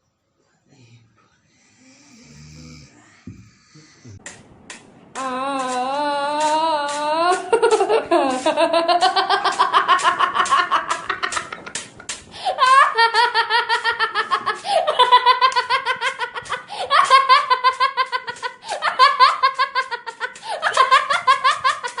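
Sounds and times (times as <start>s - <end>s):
person laughing hard: 6.4s - 22.0s.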